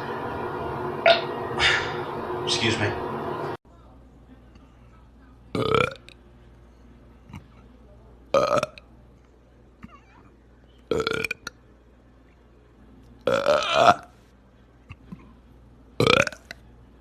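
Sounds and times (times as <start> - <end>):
person burping: 5.6 - 6.0, 8.4 - 8.8, 10.9 - 11.5, 13.3 - 14.1, 16.0 - 16.5.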